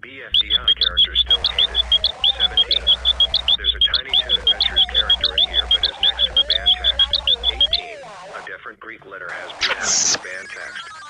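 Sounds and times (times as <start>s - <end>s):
low hum: 0.3s - 8.2s
rapid high-pitched chirps: 0.3s - 8.5s.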